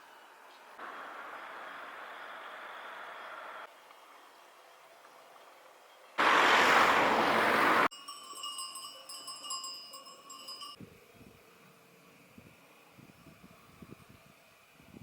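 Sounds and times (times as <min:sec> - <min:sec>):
burst of rushing noise: 0:06.2 - 0:07.9
metallic ringing tones: 0:07.9 - 0:10.8.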